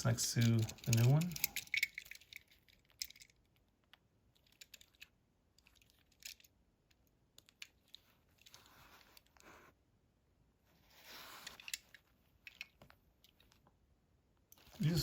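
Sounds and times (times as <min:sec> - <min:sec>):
toy cars clicking and tapping: 0:00.2 - 0:03.4, 0:04.4 - 0:06.5
soft rustle: 0:07.5 - 0:09.9, 0:10.6 - 0:13.8.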